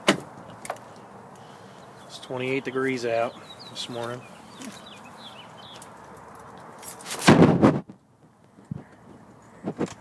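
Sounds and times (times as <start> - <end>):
outdoor background noise: 0.0 - 10.0.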